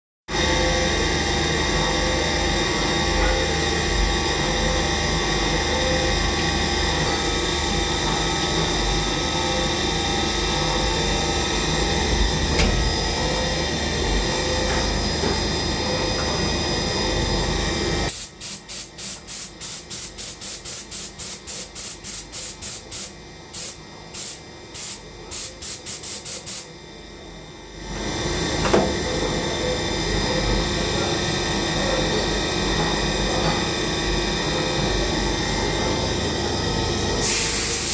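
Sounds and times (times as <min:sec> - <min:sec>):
machining centre whining: 0:00.4 - 0:18.1
machine on-off bursts: 0:18.1 - 0:26.7, 0:37.1 - 0:37.9.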